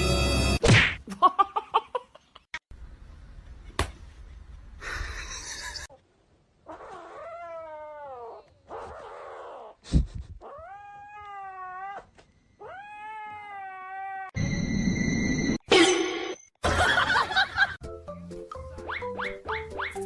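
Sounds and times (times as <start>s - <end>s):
cat meowing: 10.4s - 14.3s.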